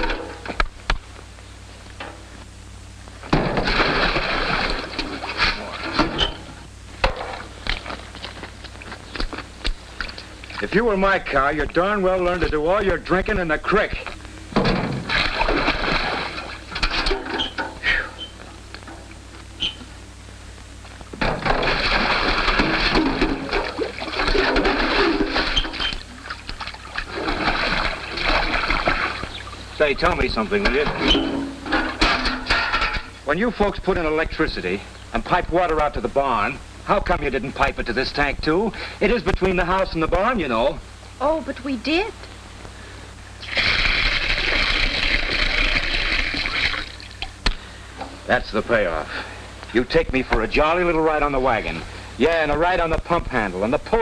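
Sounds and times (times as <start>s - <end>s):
low hum: 0.0s - 54.0s
water splashing into tank: 3.4s - 6.3s, 14.9s - 17.3s, 21.4s - 29.6s, 43.4s - 47.4s
knocks and clanks: 14.5s - 15.2s, 21.2s - 23.5s, 30.6s - 33.2s.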